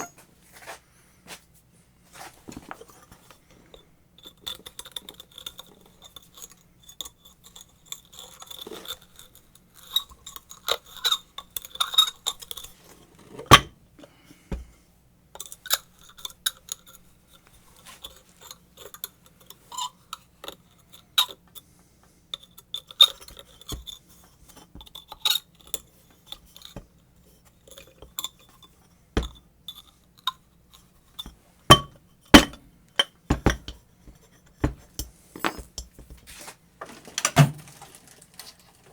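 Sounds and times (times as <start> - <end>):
metal parts clinking and knocking: 31.7 - 33.8.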